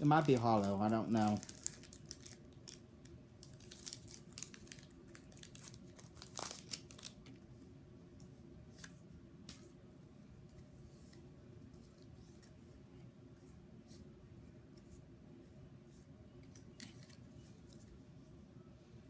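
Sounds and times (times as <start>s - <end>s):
foil wrapper crinkling and tearing: 0.0s - 7.3s.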